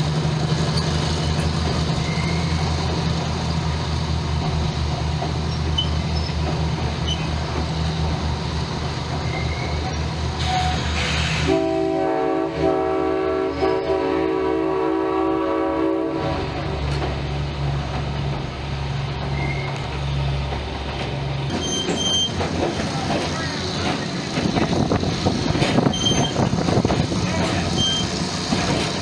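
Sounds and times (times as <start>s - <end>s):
diesel locomotive engine humming: 0.0s - 29.0s
multi-tone air horn blasts: 10.4s - 16.5s.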